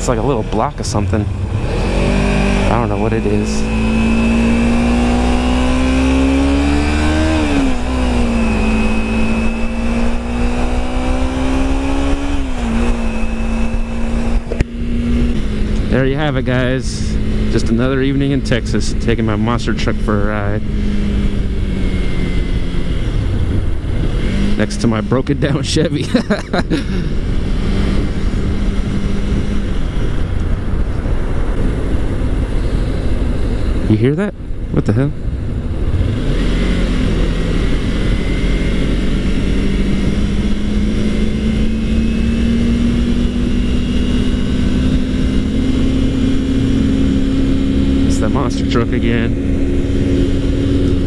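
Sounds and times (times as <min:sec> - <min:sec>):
motorcycle engine running: 0:00.0 - 0:33.8, 0:34.4 - 0:51.0
wind rushing over microphone: 0:00.0 - 0:51.0
wind rush: 0:26.9 - 0:48.6.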